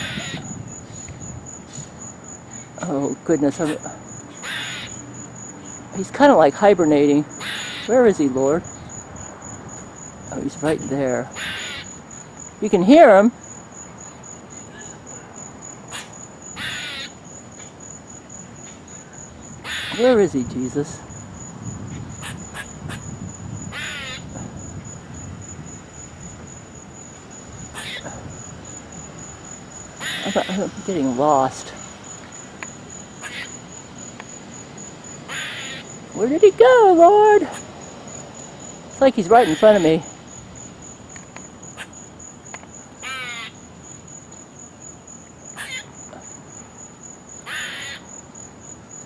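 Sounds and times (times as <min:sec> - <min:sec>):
harsh animal call: 0:00.0 - 0:00.6, 0:03.6 - 0:05.0, 0:07.3 - 0:08.1, 0:10.6 - 0:12.0, 0:15.9 - 0:17.2, 0:19.6 - 0:20.2, 0:22.1 - 0:23.1, 0:23.7 - 0:24.4, 0:27.7 - 0:28.3, 0:30.0 - 0:30.8, 0:33.1 - 0:33.7, 0:35.2 - 0:36.0, 0:39.2 - 0:40.1, 0:41.7 - 0:42.0, 0:43.0 - 0:43.6, 0:45.6 - 0:46.0, 0:47.4 - 0:48.1
insects trilling: 0:00.0 - 0:49.0.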